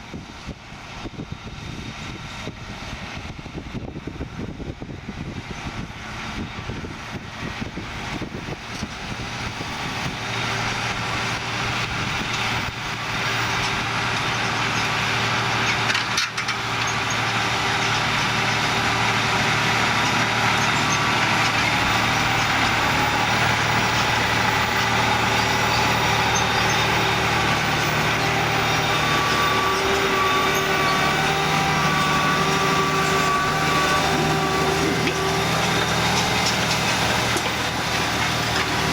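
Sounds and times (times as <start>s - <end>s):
tractor diesel engine under load: 0.0s - 38.9s.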